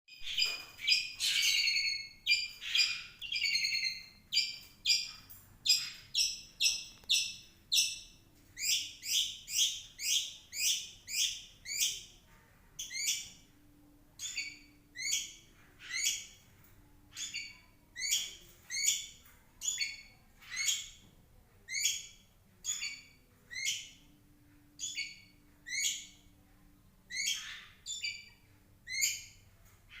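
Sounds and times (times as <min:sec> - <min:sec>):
bird singing shrill chirps: 0:00.1 - 0:12.1.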